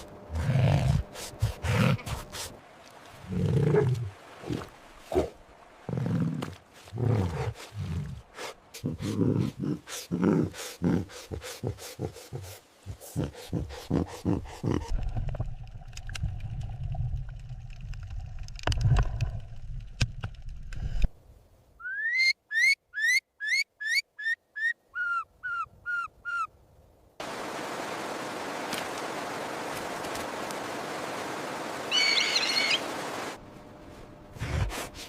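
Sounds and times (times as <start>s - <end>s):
bird whistling call: 21.8s - 26.5s, 31.9s - 32.8s.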